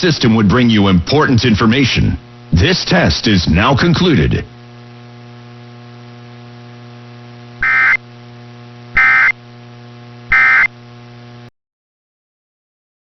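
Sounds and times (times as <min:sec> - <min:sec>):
steady radio hum: 0:00.0 - 0:11.5
warbling digital data tones: 0:07.6 - 0:08.0, 0:09.0 - 0:09.4, 0:10.3 - 0:10.7.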